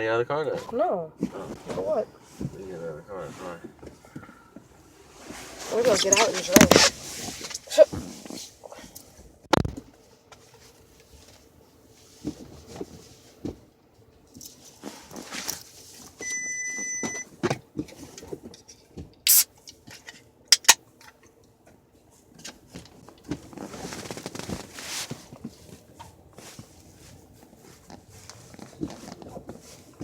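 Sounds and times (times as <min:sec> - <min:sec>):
rustling inside car: 0:01.2 - 0:09.2, 0:09.8 - 0:20.4, 0:21.9 - 0:30.0
short electronic beep: 0:16.2 - 0:17.2.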